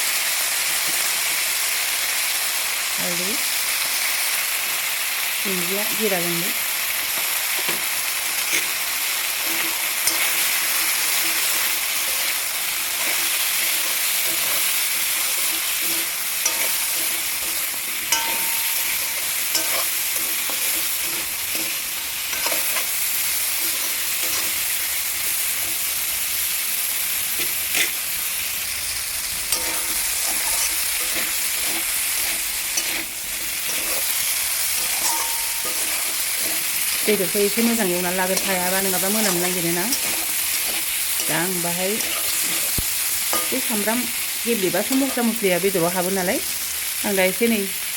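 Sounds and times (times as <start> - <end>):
chicken sizzling in oil: 0.0 - 47.9.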